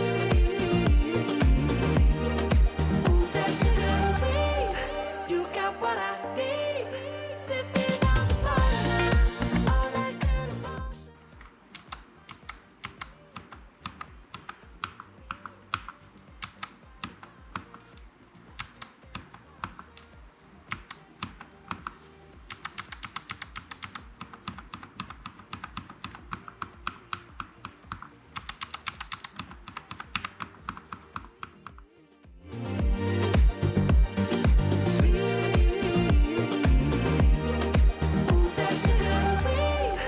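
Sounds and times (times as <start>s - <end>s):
background music: 0.0s - 40.0s.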